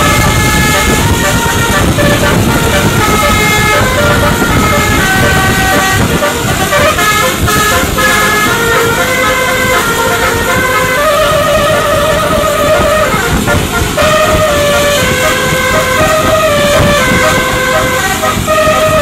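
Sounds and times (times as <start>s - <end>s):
engine and road noise: 0.0s - 19.0s
multi-tone bus horn playing tune: 0.0s - 19.0s.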